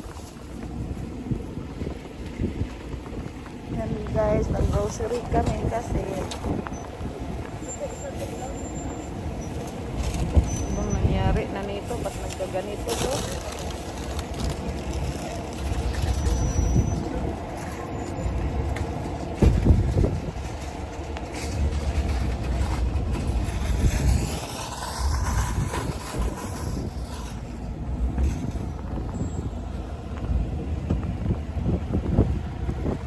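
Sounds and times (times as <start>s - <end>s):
vehicle engine rumble: 0.0s - 33.0s
vehicle thumps: 19.3s - 20.5s.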